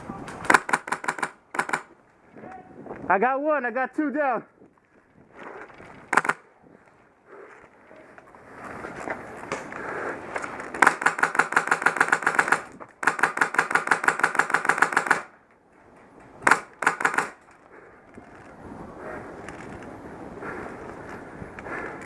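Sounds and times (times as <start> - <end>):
airsoft gun firing bursts: 0.5 - 1.9, 6.1 - 6.4, 10.8 - 15.3, 16.4 - 17.4.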